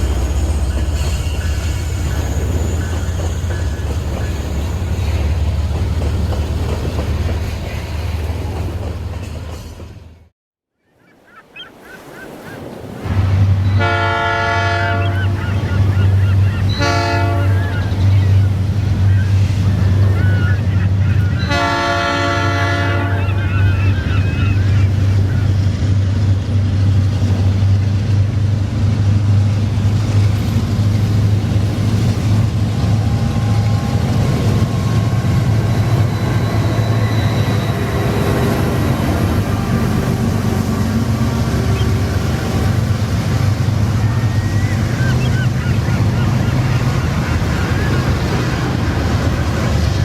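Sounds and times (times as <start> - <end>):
low locomotive rumble: 0.0 - 10.3, 13.1 - 50.0
train horn blast: 13.1 - 15.4, 16.7 - 18.5, 21.2 - 23.4, 32.7 - 43.6.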